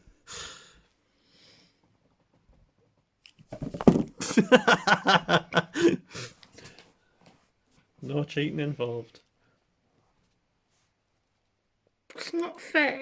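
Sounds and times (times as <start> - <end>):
soft breath: 0.0 - 1.9
person laughing: 4.2 - 6.2.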